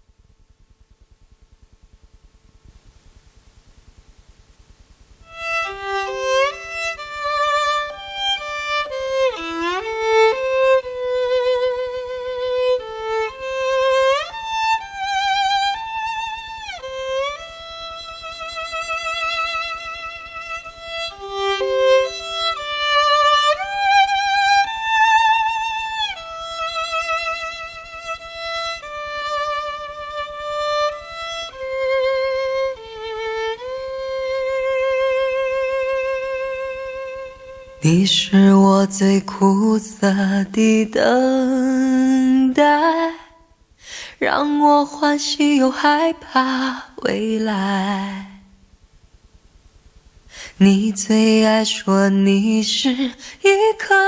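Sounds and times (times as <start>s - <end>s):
bowed string melody on cassette: 5.3s - 15.2s.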